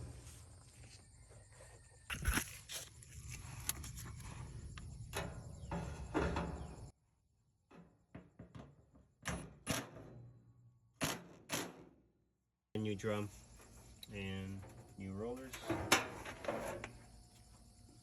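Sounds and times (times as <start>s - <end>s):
dryer parts clunking and knocking: 4.8s - 7.0s, 7.6s - 12.0s, 13.5s - 17.3s.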